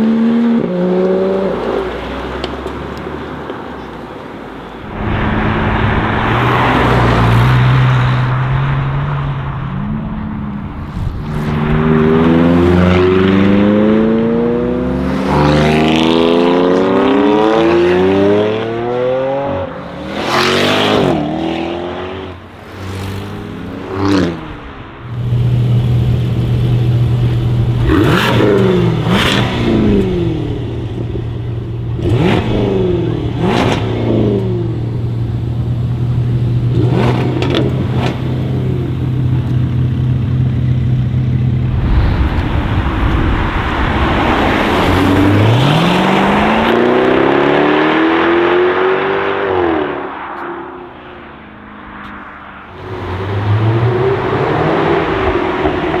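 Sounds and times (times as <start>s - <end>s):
car engine accelerating: 4.6s - 56.0s
engine rev blips: 4.8s - 14.9s, 24.1s - 48.6s
engine idling: 25.0s - 36.8s.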